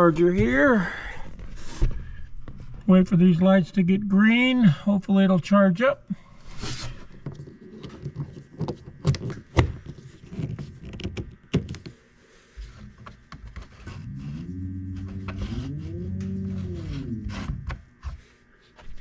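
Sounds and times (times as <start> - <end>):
low drawn-out rising tone: 13.9 - 17.7.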